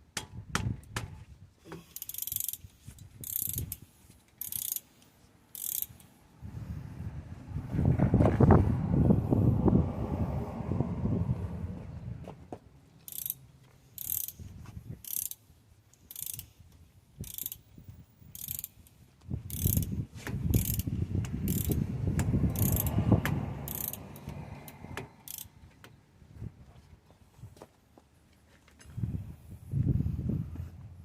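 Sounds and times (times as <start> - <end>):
ratchet wrench clicking: 1.9 - 6.1, 13.0 - 16.6, 17.2 - 25.5.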